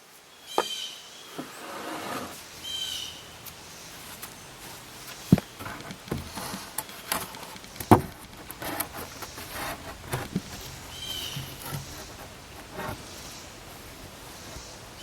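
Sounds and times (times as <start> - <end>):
bird chirping: 2.4 - 5.6, 10.3 - 15.0
knocks and clatters: 5.3 - 13.1.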